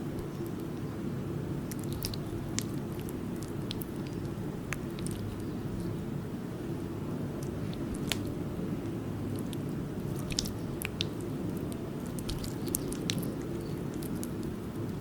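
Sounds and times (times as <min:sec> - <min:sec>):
steady low background noise: 0:00.0 - 0:15.0
slime squished by hand: 0:01.6 - 0:05.5, 0:07.4 - 0:08.4, 0:09.3 - 0:15.0.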